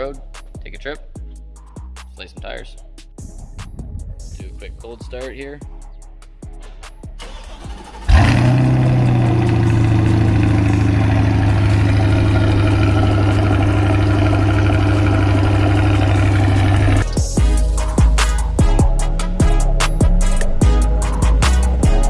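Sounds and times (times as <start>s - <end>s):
car engine starting and idling: 7.2s - 17.4s.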